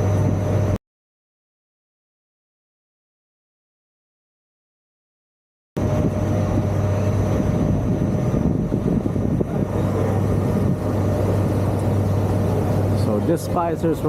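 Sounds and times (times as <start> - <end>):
ferry engine droning: 0.0 - 0.8, 5.8 - 14.0
water wash: 5.8 - 14.0.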